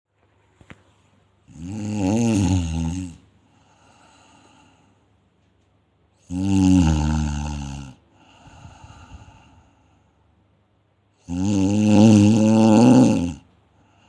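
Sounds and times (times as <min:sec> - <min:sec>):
loud wavering snores: 0:01.5 - 0:03.2, 0:06.2 - 0:09.5, 0:11.2 - 0:13.5
soft breathy breath: 0:03.4 - 0:05.2, 0:08.1 - 0:10.4.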